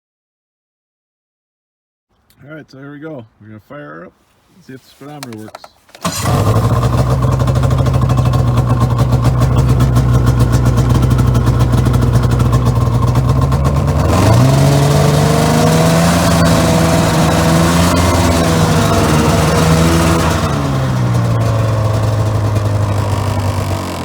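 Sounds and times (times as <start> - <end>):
snowmobile engine running: 5.0 - 24.0.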